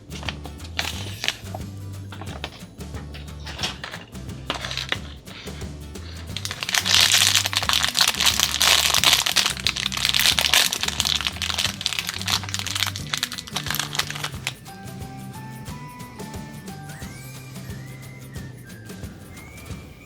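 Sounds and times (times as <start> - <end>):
background music: 0.0 - 20.0
plastic packaging crinkling and tearing: 6.4 - 14.6.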